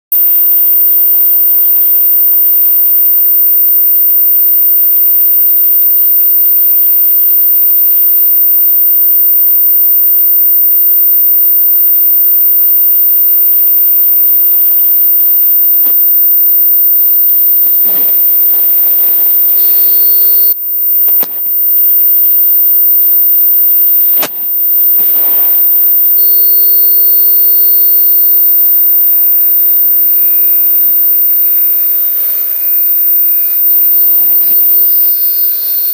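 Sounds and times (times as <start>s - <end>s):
high-pitched whine: 30.0s - 35.9s.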